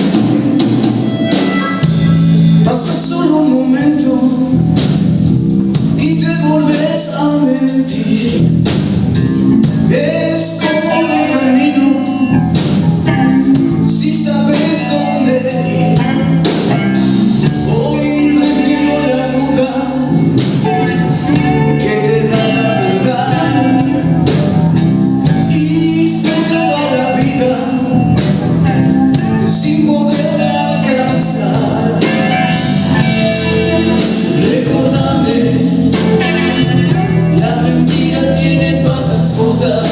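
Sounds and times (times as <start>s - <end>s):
person singing: 0.0s - 5.0s, 6.0s - 8.6s, 9.8s - 39.9s
blues band playing live: 0.0s - 39.9s.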